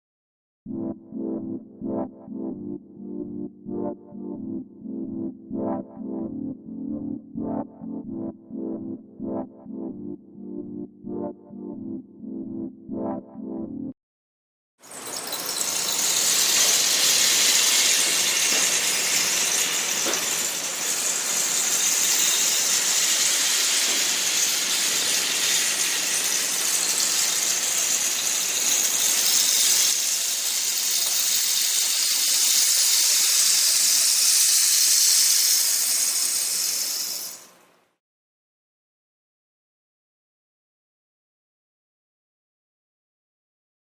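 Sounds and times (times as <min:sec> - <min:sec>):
rainstick trickling hiss: 0:14.9 - 0:37.6.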